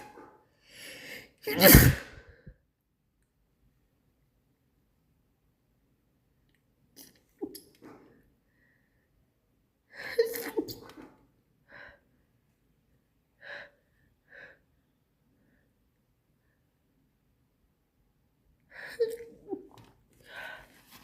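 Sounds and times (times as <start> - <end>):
woman breathing: 0.0 - 2.5, 13.3 - 15.8, 20.2 - 21.0
woman sneezing: 1.4 - 2.4.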